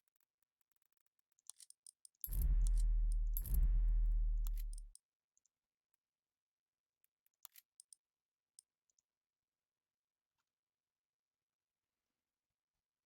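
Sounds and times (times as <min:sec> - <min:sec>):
loud low electrical hum: 0:02.3 - 0:04.9.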